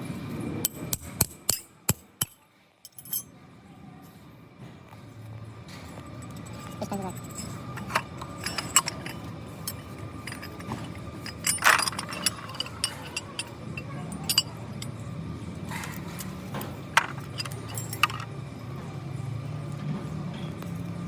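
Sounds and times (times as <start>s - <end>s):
metal tools clinking: 1.5s - 3.3s, 5.7s - 18.4s
steady low hum: 5.0s - 21.0s.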